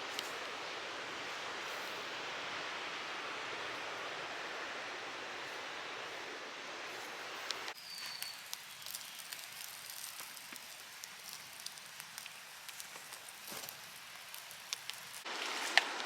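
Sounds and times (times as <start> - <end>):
light crackles and ticks: 0.0 - 0.6, 6.9 - 16.0
faint hiss: 0.0 - 16.0
high whistle: 7.8 - 8.6.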